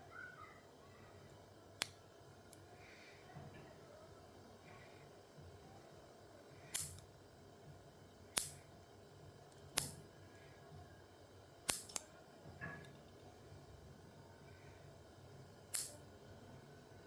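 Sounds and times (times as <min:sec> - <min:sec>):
nail clippers clicking: 0:06.8 - 0:07.0, 0:08.4 - 0:08.6, 0:09.6 - 0:10.0, 0:11.7 - 0:12.1, 0:15.8 - 0:16.0.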